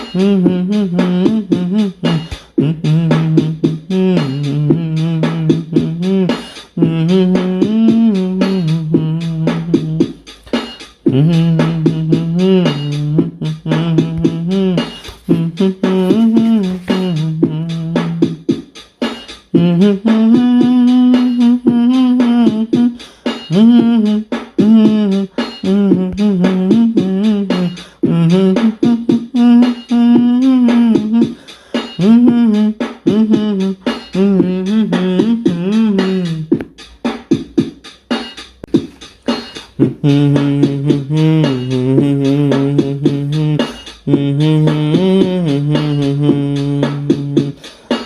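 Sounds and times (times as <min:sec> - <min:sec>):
wordless vocal melody: 0:00.0 - 0:18.5, 0:19.5 - 0:36.6, 0:39.7 - 0:48.0
sharp percussive hits: 0:07.6 - 0:19.7, 0:32.8 - 0:48.0.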